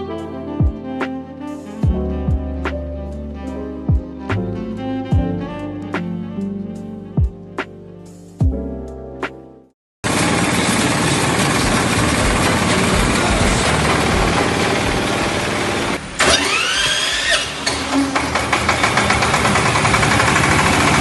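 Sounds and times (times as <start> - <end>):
diesel engine running milling machine: 10.0 - 21.0
mechanical whine: 10.1 - 21.0.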